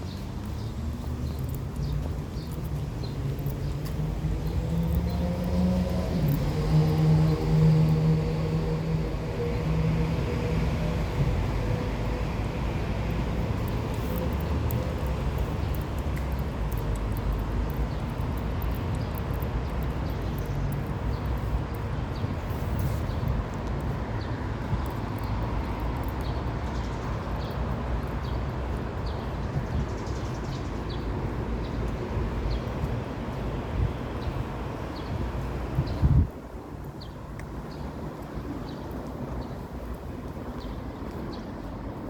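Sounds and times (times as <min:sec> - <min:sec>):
low wind rumble on microphone: 0:00.0 - 0:42.0
small clicks: 0:13.6 - 0:21.9.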